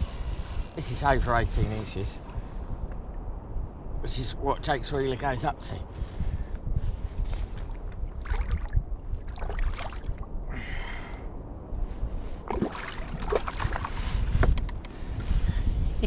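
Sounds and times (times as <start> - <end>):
water lapping around kayak: 6.0 - 10.5, 12.2 - 15.6
knocks and scrapes on hull: 12.4 - 15.2.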